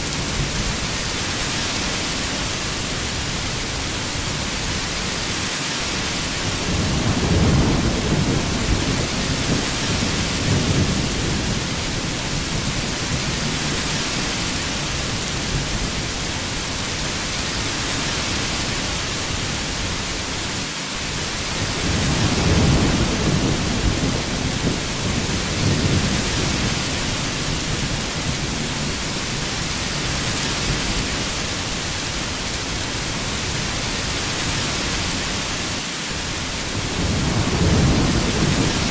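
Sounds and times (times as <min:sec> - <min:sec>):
heavy rain: 0:00.0 - 0:38.9
low thunder rolling: 0:06.6 - 0:13.6, 0:21.8 - 0:29.2, 0:36.7 - 0:38.9.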